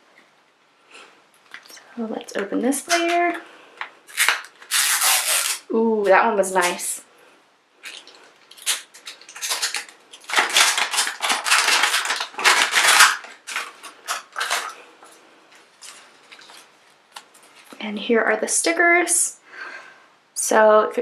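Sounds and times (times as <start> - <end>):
plastic wrapping crinkling: 2.8 - 6.9, 7.8 - 17.8.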